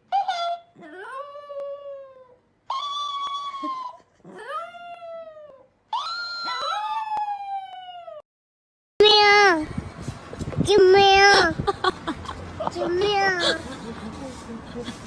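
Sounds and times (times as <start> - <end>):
pet animal crying: 2.7 - 4.0, 5.9 - 7.0.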